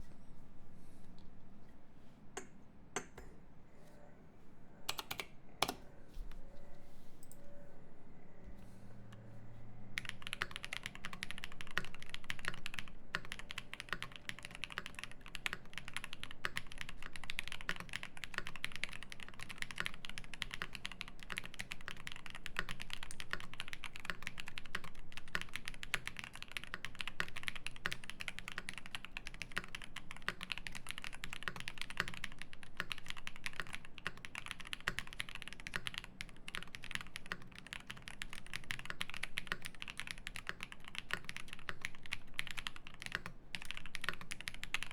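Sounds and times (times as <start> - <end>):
mechanical keyboard typing: 4.9 - 5.8, 10.0 - 44.9.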